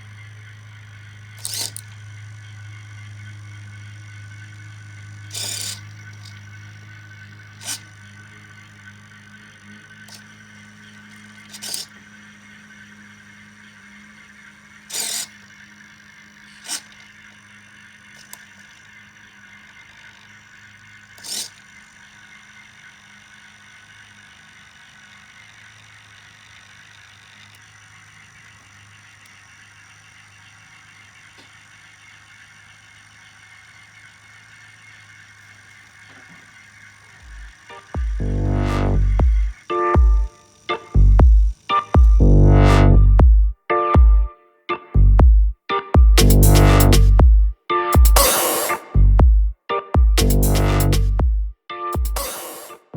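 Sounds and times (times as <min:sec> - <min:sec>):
model train electric hum: 0:00.0 - 0:43.2, 0:46.2 - 0:47.2, 0:50.2 - 0:51.2, 0:52.2 - 0:52.9
sharp clacks: 0:45.8 - 0:47.3.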